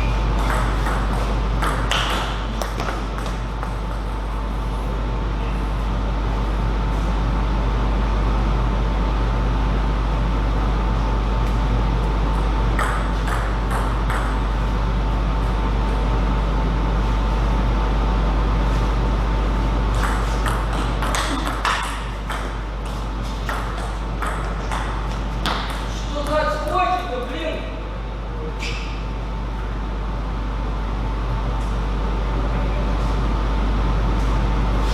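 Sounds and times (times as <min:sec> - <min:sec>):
steady low hum: 0:00.0 - 0:34.9
table tennis ball hits: 0:00.4 - 0:04.2, 0:12.8 - 0:14.5, 0:20.0 - 0:26.8.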